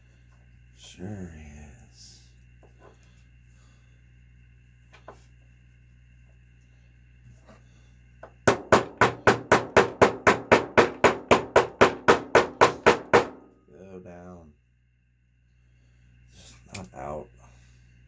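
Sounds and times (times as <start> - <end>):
faint hum: 0.0 - 18.0.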